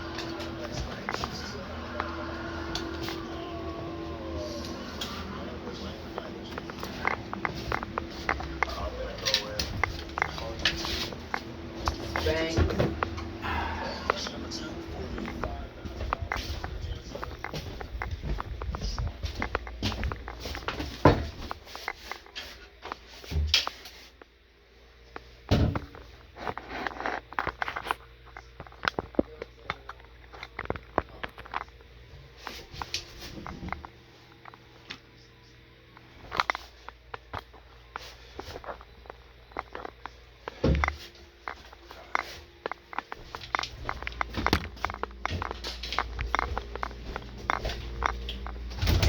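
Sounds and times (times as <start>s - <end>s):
sharp clicks and rattles: 6.5s - 12.4s, 15.2s - 22.2s, 36.0s - 49.0s.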